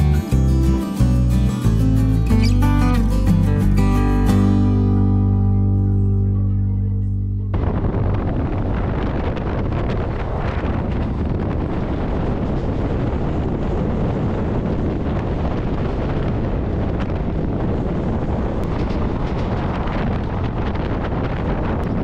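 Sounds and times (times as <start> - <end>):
wind buffeting microphone: 7.4 - 22.0
train wheels rumbling on track: 10.6 - 21.4.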